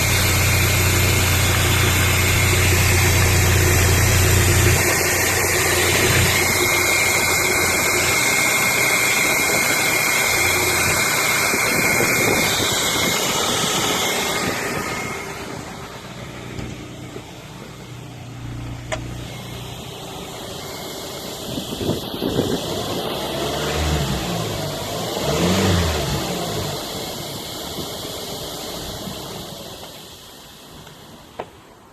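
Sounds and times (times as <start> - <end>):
thin steady whine: 0.0 - 23.2
engine revving: 0.0 - 29.6
car engine idling: 0.0 - 31.9.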